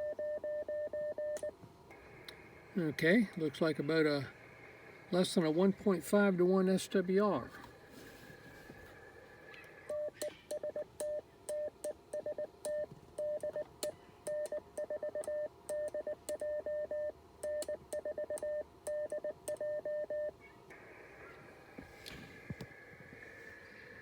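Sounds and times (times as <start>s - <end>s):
morse code beeps: 9.9s - 13.7s, 14.3s - 20.3s.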